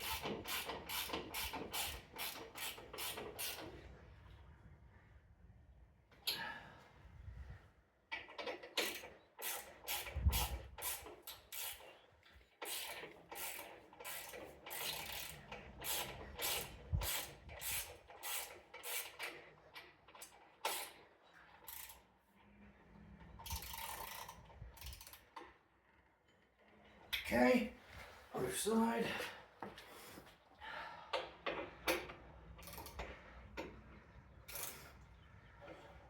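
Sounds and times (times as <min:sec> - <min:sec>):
ratchet wrench clicking: 0:00.0 - 0:03.6, 0:08.8 - 0:11.9, 0:12.6 - 0:19.4, 0:20.2 - 0:21.0, 0:21.6 - 0:22.0, 0:23.4 - 0:25.4.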